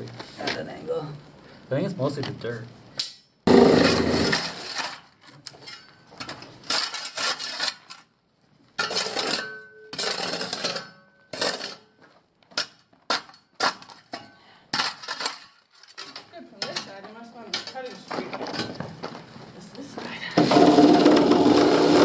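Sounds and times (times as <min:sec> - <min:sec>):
hand tool scraping and clattering: 0:03.5 - 0:08.1, 0:08.8 - 0:19.3, 0:20.4 - 0:22.0.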